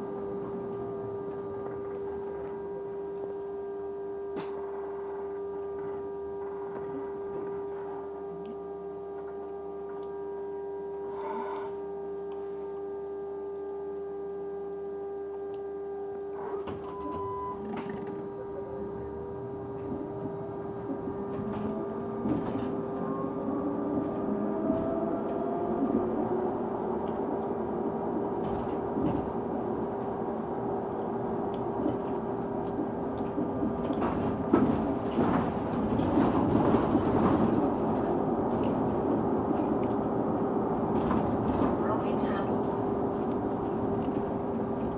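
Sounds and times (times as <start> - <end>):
bus running noise: 0.0 - 3.7, 16.4 - 44.9
bus whine rising in pitch: 0.0 - 44.9
steady constant-pitch tone: 5.4 - 16.4.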